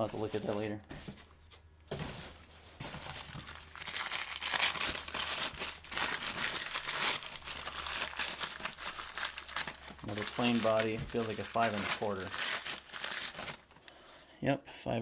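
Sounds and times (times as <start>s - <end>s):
packing paper crinkling: 2.5s - 14.2s.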